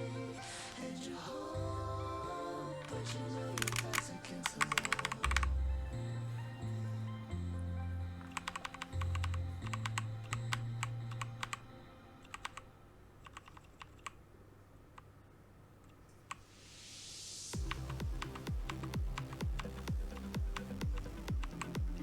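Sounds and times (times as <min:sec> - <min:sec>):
mechanical keyboard keys clacking: 0:03.6 - 0:05.5, 0:08.2 - 0:11.6, 0:12.2 - 0:12.6, 0:13.2 - 0:14.2.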